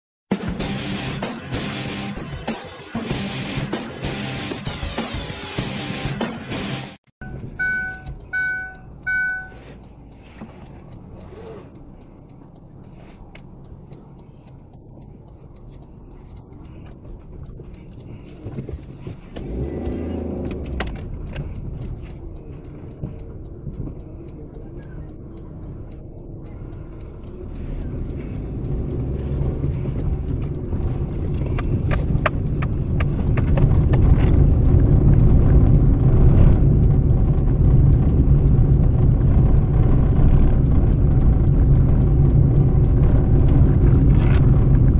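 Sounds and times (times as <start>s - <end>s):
car engine and road rumble: 0.3s - 44.9s
short beeps: 7.2s - 9.7s.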